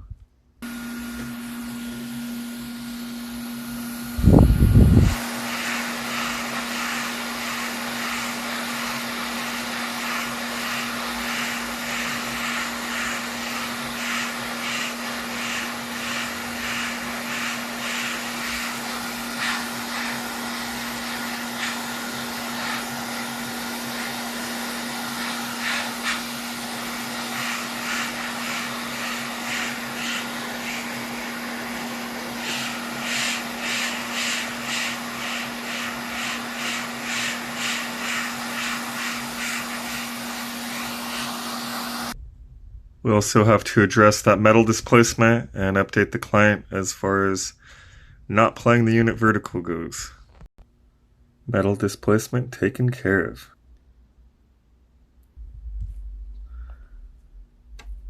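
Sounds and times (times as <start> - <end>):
electric blower motor humming: 0.6 - 42.2.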